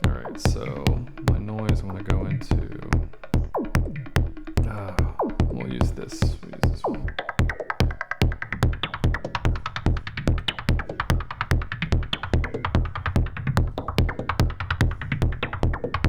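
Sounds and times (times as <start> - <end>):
low kick-like thumps: 0.0 - 16.0
rapid sharp high ticks: 0.0 - 16.0
synthesized electronic beat: 0.0 - 16.0.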